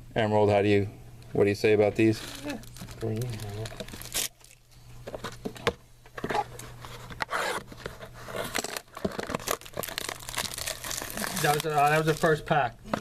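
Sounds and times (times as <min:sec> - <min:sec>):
card pack wrapper crinkling: 0:02.0 - 0:04.6, 0:07.4 - 0:12.7.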